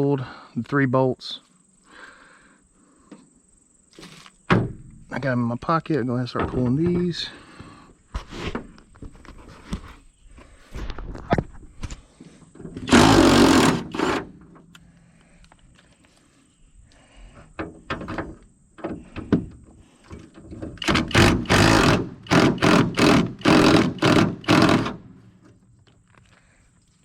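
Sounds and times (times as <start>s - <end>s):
wrench short bursts: 12.9s - 14.3s, 20.8s - 25.0s.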